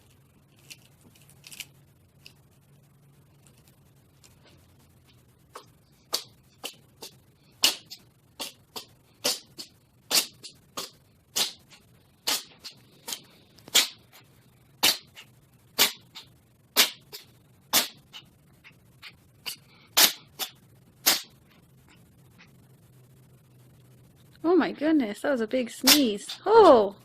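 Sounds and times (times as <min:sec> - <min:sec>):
cat sneezing: 0:05.6 - 0:14.0, 0:14.8 - 0:15.2, 0:15.8 - 0:18.2, 0:19.4 - 0:21.3.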